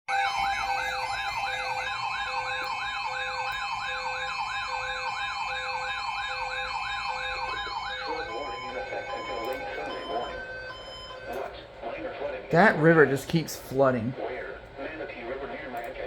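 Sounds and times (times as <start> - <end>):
emergency alert tones: 0.1 - 11.6
low pulsing beep: 7.4 - 11.5.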